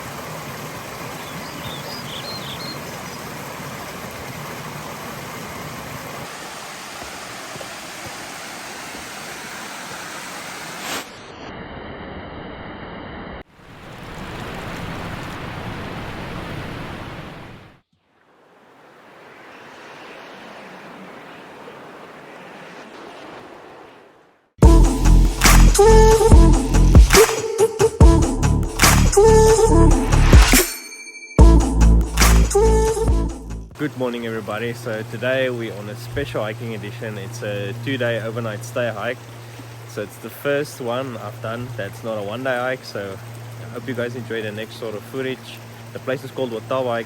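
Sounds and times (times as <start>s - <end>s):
waterfall rushing: 0.0s - 11.2s.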